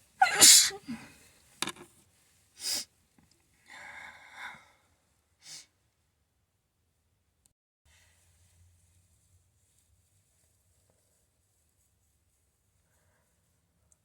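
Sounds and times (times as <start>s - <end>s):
person sniffing: 0.2s - 0.8s, 2.6s - 2.9s.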